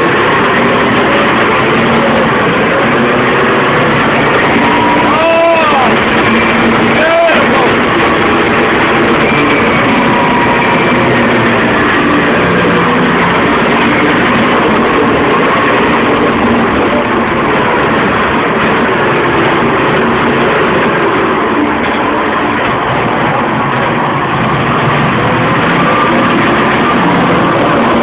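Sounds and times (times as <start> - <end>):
bulldozer diesel engine running: 0.0 - 28.0
mechanical clatter: 0.0 - 28.0.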